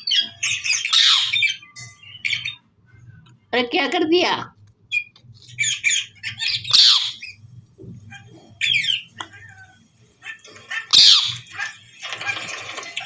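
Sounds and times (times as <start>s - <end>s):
parakeet screeching: 0.0s - 2.6s, 4.9s - 7.4s, 8.1s - 12.4s
parakeet soft calls: 0.0s - 2.6s, 4.9s - 7.4s, 8.0s - 11.8s.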